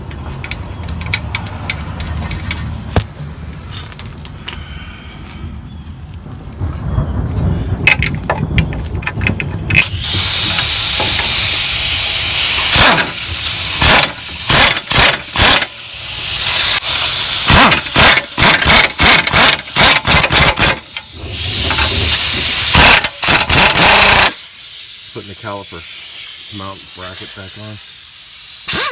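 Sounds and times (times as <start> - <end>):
air hissing: 9.8 - 28.9
pneumatic impact wrench running: 9.8 - 28.9.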